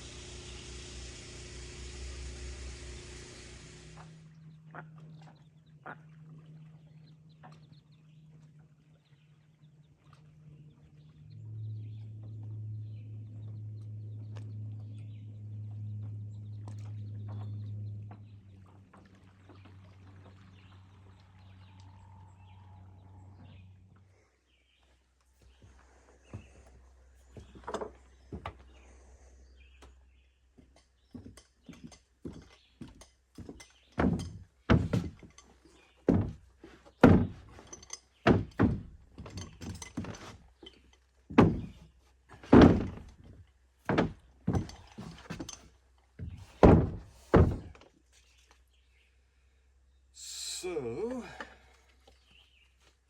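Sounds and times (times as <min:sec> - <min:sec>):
wooden thunks and knocks: 0:30.6 - 0:47.9.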